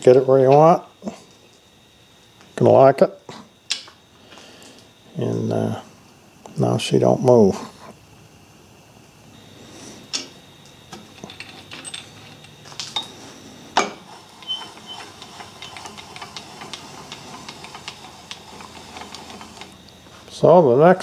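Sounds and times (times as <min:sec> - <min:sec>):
metal parts clinking and knocking: 0:10.9 - 0:13.2.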